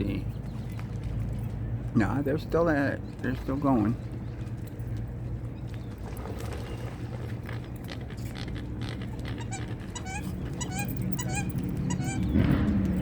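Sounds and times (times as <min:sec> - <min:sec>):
birds splashing: 0:00.0 - 0:13.0
coots calling: 0:02.6 - 0:13.0.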